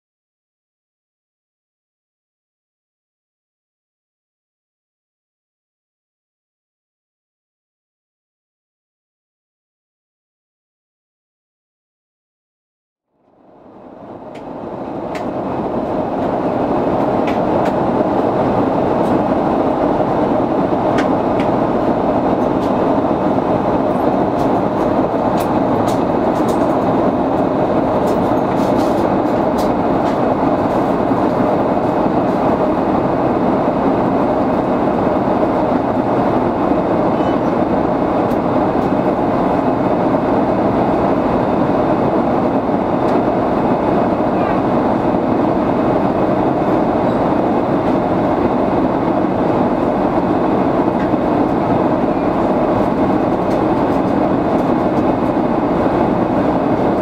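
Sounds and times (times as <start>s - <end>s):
airliner cabin air and engine roar: 13.1s - 57.0s.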